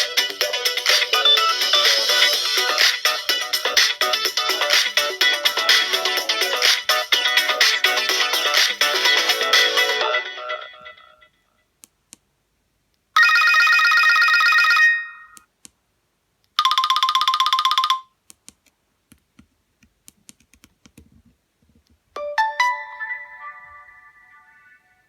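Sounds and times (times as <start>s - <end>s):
phone ringtones: 13.2s - 15.4s, 16.6s - 18.1s.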